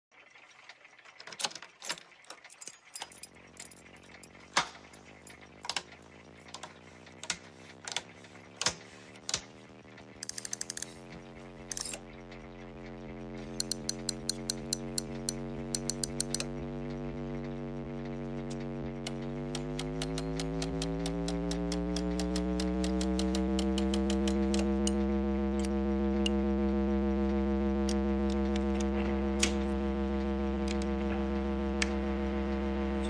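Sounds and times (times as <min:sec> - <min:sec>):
electrical hum: 0:02.6 - 0:33.0
knob ratcheting clicks: 0:10.2 - 0:10.9, 0:13.6 - 0:16.5, 0:19.0 - 0:25.0
amplifier switches clicking: 0:13.6 - 0:17.1, 0:18.5 - 0:32.1.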